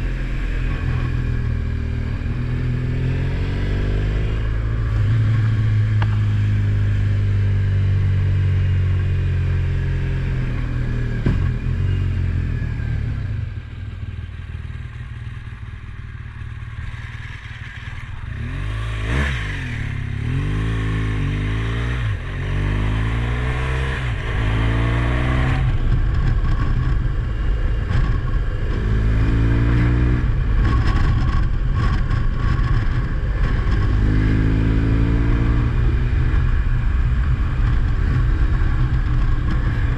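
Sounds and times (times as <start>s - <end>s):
vehicle engine revving: 18.1s - 39.9s.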